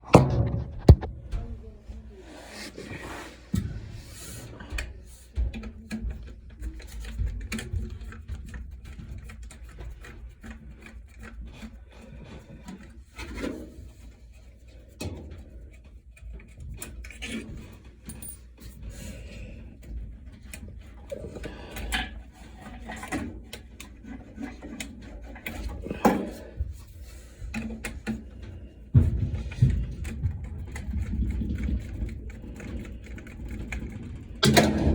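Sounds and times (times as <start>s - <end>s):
clicks and knocks: 0.0s - 1.5s
scraping: 0.0s - 4.5s.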